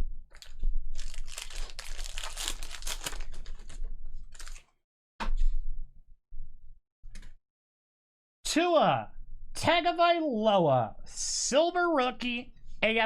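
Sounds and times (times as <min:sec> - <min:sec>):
wrapper tearing and crinkling: 0:00.4 - 0:04.6.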